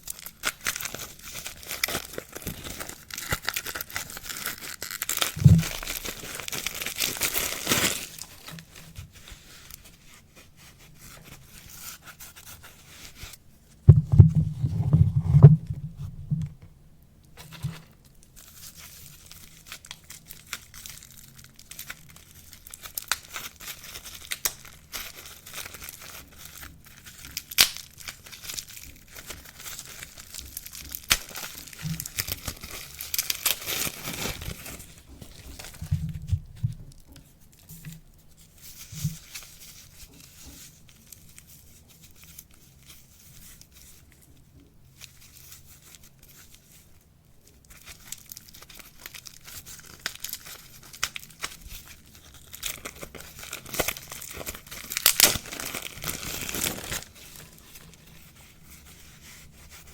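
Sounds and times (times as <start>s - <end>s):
wrapping tearing and crinkling: 0.0s - 13.4s, 17.4s - 59.9s
low knocks: 5.4s - 6.0s, 13.9s - 16.7s.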